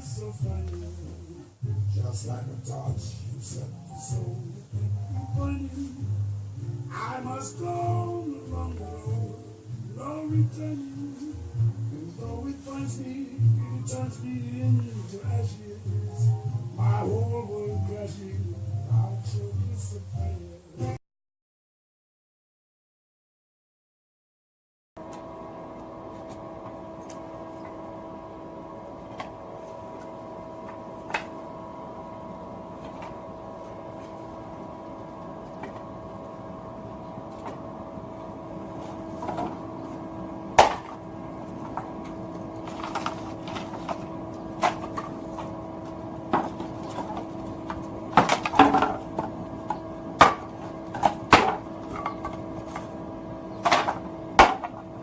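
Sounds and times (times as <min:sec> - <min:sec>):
steady hum: 0:00.0 - 0:21.0, 0:25.0 - 0:55.0
firewood knocking and clattering: 0:38.8 - 0:39.7, 0:40.5 - 0:52.9, 0:53.6 - 0:54.8.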